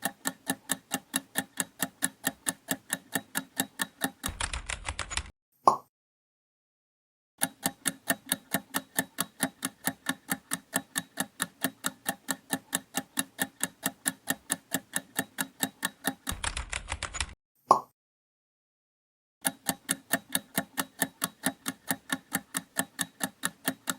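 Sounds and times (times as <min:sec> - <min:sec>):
fast timer ticks: 0:00.0 - 0:05.3, 0:07.4 - 0:17.4, 0:19.4 - 0:23.9.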